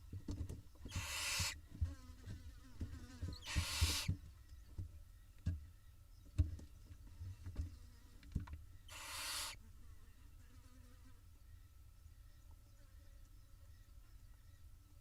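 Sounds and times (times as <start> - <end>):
owl chicks hissing: 0.8 - 1.6, 3.3 - 4.2, 8.8 - 9.6.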